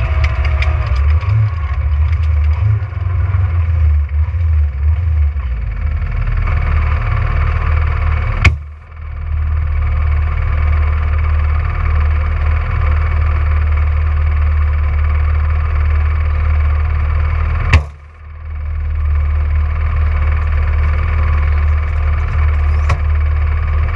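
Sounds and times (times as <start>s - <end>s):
rally car engine under load: 0.0s - 23.9s.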